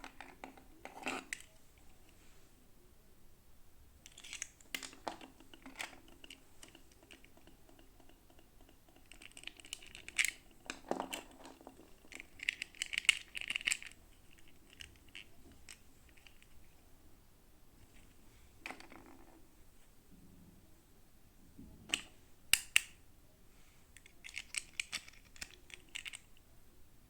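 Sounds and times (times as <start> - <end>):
plastic pieces clicking: 4.0 - 16.5, 21.9 - 23.0, 24.0 - 26.4.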